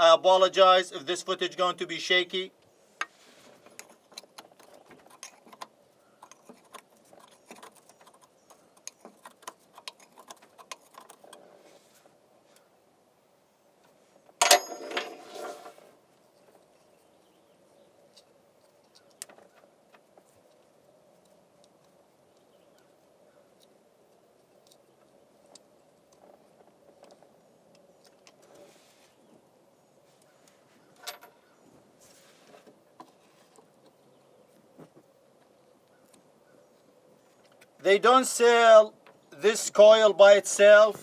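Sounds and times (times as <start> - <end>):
small metallic clicks and rattles: 3.6 - 11.4, 31.0 - 31.5.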